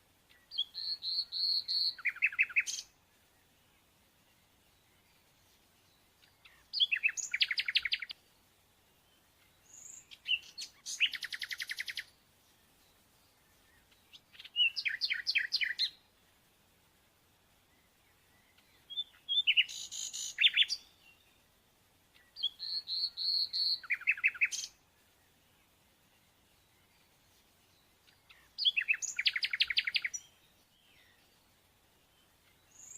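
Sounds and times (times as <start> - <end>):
songbird trilling: 0.3 - 2.9, 6.3 - 8.2, 9.6 - 12.1, 14.1 - 16.0, 18.5 - 21.2, 22.2 - 24.8, 28.1 - 30.3.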